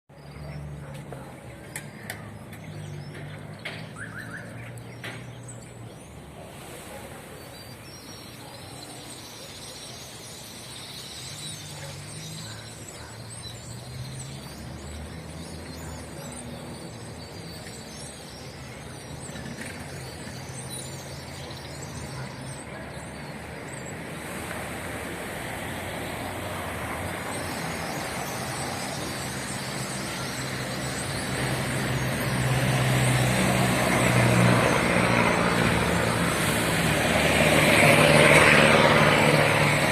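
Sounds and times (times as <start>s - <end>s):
birds chirping: 0.1s - 39.9s
low rumble of road traffic: 0.1s - 39.9s.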